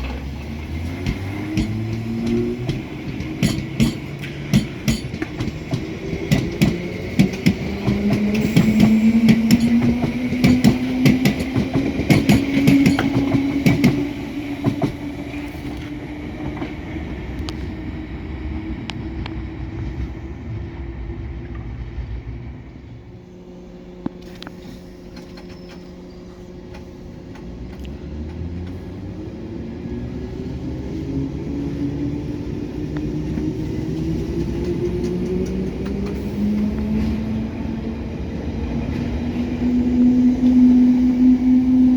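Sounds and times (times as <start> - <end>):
wheels clattering over rails: 0.0 - 16.8
train motors whining: 0.0 - 17.8
train rumble: 0.0 - 41.9.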